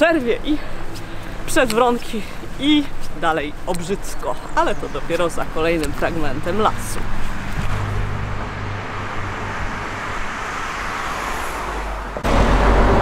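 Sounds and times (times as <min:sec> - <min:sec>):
car driving past: 0:07.1 - 0:13.0.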